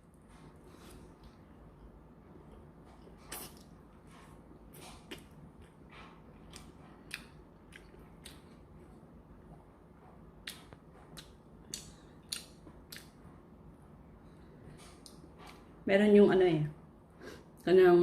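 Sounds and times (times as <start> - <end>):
person chewing food: 0.1 - 9.6, 10.2 - 13.3
wet mouth clicks and smacks: 10.4 - 13.2.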